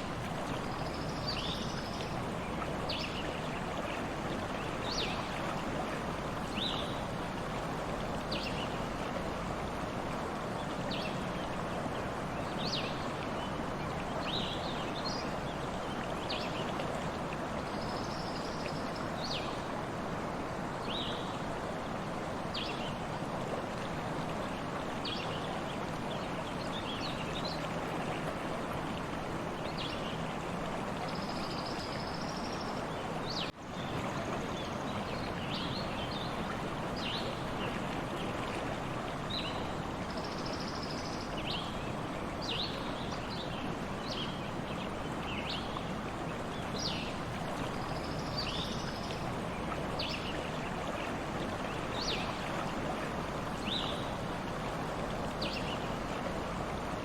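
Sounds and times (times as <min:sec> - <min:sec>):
stream running: 0:00.0 - 0:57.0.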